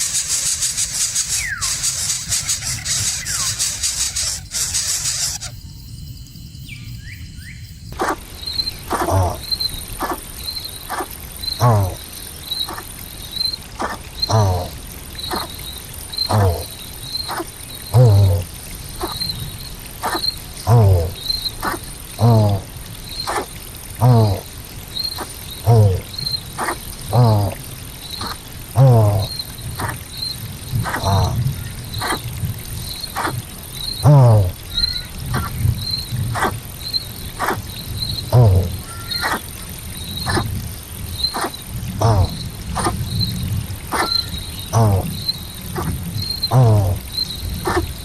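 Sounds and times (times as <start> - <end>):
animal calls with falling sweep: 0.0 - 5.6
high-pitched chirping: 0.1 - 5.7.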